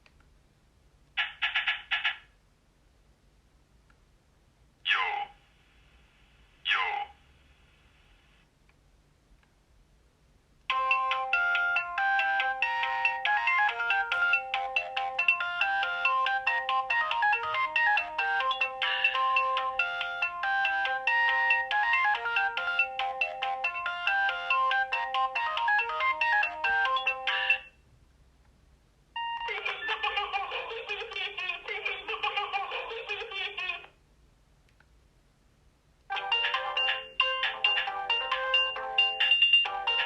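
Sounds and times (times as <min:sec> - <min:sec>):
phone ringtone melody: 0:10.7 - 0:27.7, 0:29.2 - 0:30.0, 0:36.1 - 0:40.0.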